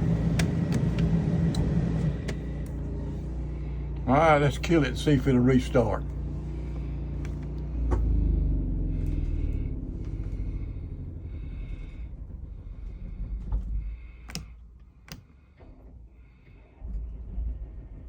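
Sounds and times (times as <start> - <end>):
generator engine running down: 0.0 - 14.2.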